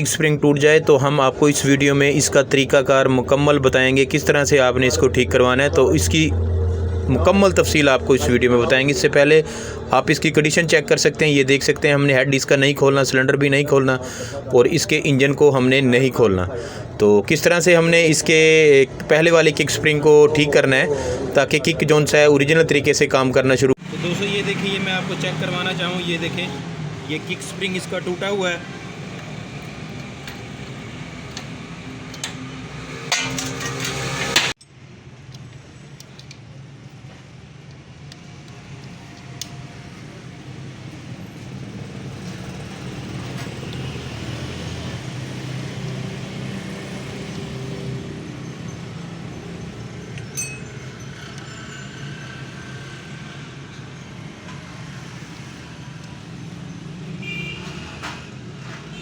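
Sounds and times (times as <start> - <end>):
road traffic: 0.0 - 59.0
metallic clinks of tools: 50.2 - 51.4.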